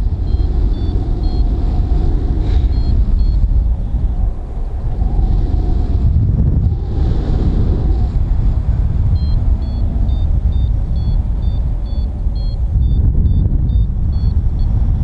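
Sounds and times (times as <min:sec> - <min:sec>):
variometer beeping: 0:00.0 - 0:01.8, 0:02.6 - 0:03.6, 0:09.1 - 0:14.8
wind buffeting microphone: 0:00.0 - 0:15.0.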